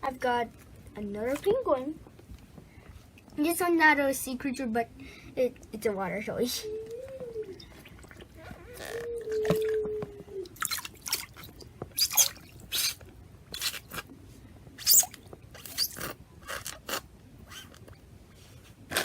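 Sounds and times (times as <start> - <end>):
water splashing and dripping: 9.4 - 13.0.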